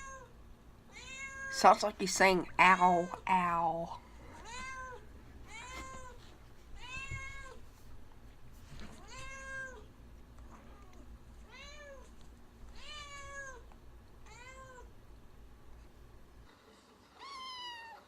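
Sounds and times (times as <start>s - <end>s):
cat meowing: 0.9s - 1.6s.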